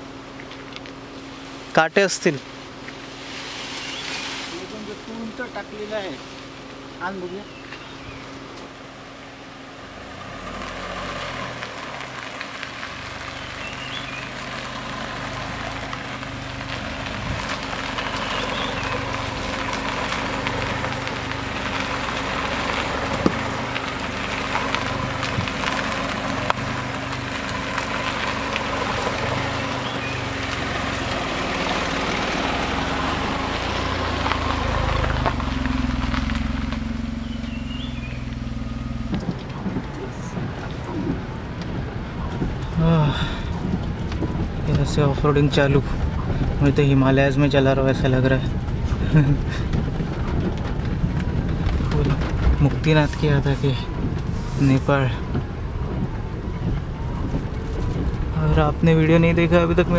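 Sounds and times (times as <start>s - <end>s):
tyres on loose rock and gravel: 0.0s - 9.0s, 10.0s - 59.9s
car engine running: 0.0s - 59.9s.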